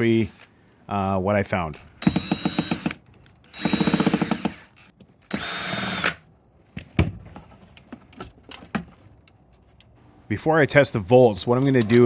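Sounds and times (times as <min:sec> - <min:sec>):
cordless drill running: 0:02.0 - 0:06.2.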